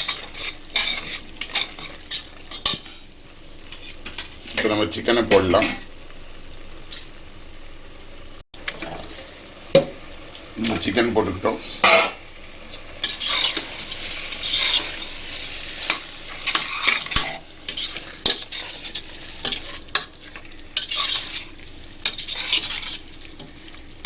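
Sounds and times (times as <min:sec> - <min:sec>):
spatula scraping a pan: 0:00.0 - 0:03.1, 0:03.7 - 0:05.8, 0:13.0 - 0:23.6
chicken sizzling in a pan: 0:00.0 - 0:24.0.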